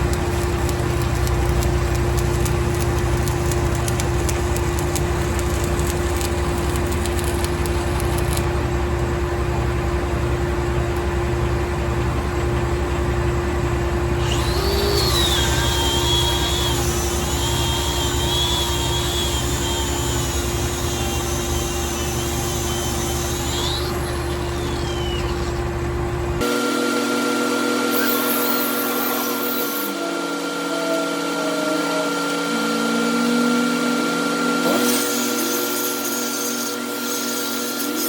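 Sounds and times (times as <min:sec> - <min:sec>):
welding arc crackling: 0:00.0 - 0:08.7, 0:14.4 - 0:25.8, 0:34.7 - 0:38.0
welder engine humming: 0:00.0 - 0:38.0.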